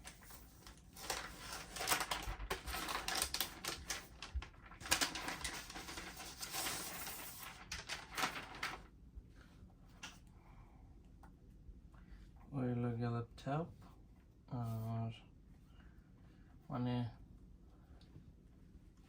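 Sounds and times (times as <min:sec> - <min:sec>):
paper packaging rustling and crinkling: 0:00.0 - 0:09.0.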